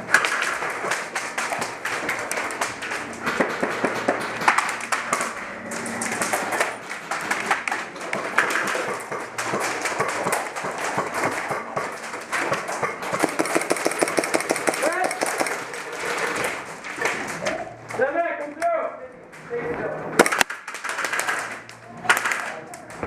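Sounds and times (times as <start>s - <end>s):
pellets striking surfaces: 6.3s - 15.7s
airsoft gun shots: 13.0s - 15.6s.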